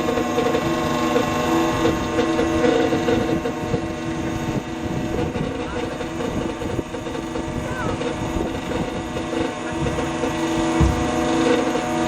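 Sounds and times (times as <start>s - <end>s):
boat engine running: 0.0s - 12.0s
low thump: 10.6s - 11.5s.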